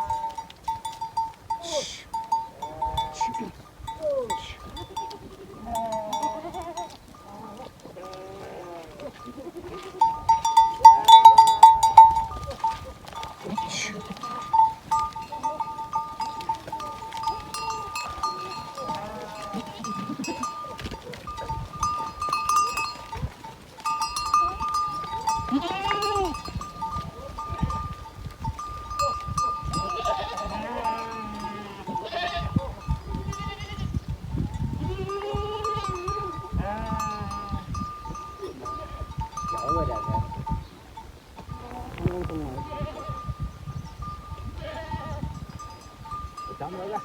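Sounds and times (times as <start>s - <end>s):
sheep bells ringing: 0.0s - 47.0s
sheep bleating: 4.2s - 10.2s, 13.4s - 14.7s, 16.4s - 21.5s, 24.4s - 26.5s, 29.7s - 34.0s, 34.8s - 37.7s, 41.6s - 43.3s, 44.6s - 45.3s.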